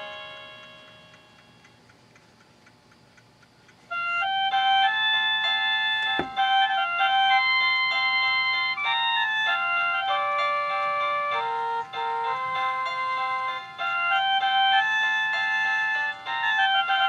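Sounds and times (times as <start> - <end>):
electronic doorbell chime melody: 0.0 - 1.3, 4.0 - 17.0
short low thump: 6.2 - 6.4.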